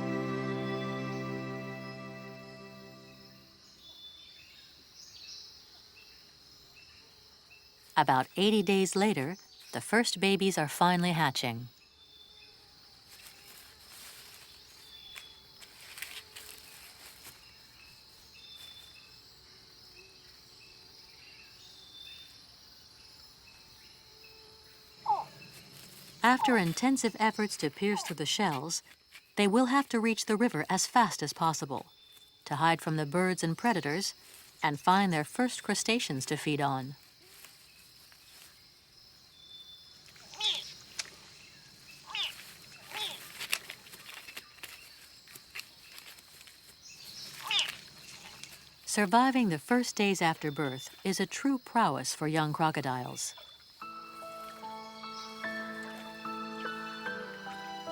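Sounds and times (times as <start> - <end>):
faint natural background: 0.0 - 57.9
insect buzzing: 11.9 - 26.8, 37.0 - 48.9
faint crackles and ticks: 42.1 - 48.9.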